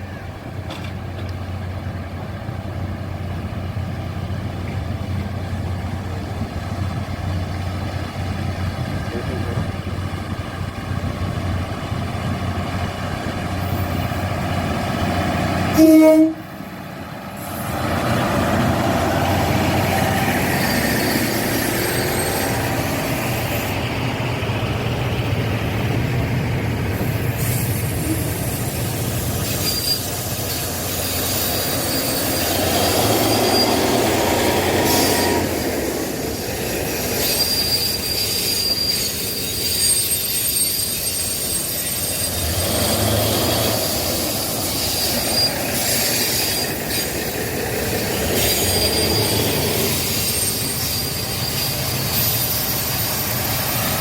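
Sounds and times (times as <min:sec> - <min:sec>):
train rumble and wheel noise: 0:00.0 - 0:54.0
train horn blast: 0:15.7 - 0:16.5.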